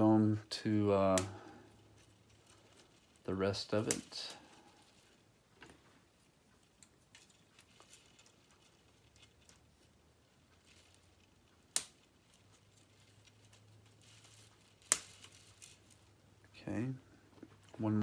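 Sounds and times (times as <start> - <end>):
plastic pieces ticking and rattling: 6.6 - 16.1.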